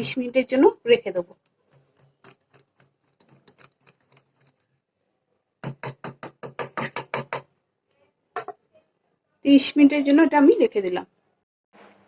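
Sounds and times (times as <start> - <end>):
spoon knocking against a bowl: 5.6 - 7.5.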